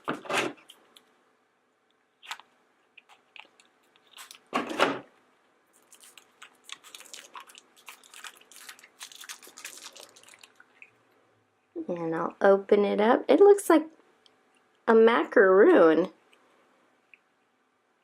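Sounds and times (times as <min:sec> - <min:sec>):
plastic wrapper crinkling: 0:02.2 - 0:04.8, 0:05.7 - 0:11.2.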